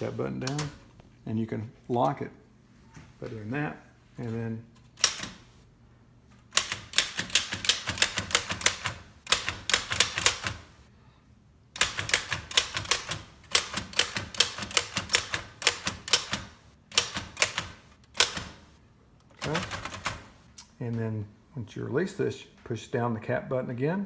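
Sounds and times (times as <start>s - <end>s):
typewriter key strikes: 5.0s - 5.4s, 6.5s - 10.7s, 11.8s - 18.7s, 19.3s - 20.3s.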